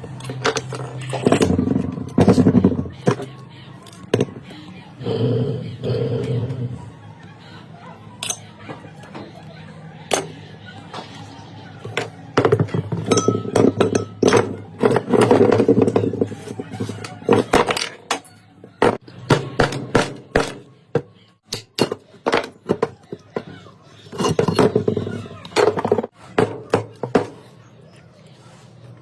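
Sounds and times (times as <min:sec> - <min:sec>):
metallic clinks and knocks: 0:12.0 - 0:16.3.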